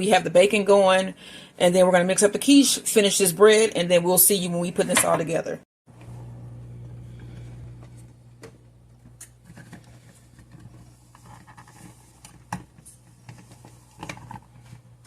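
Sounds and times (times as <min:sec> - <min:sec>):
low steady hum: 0:05.9 - 0:15.0.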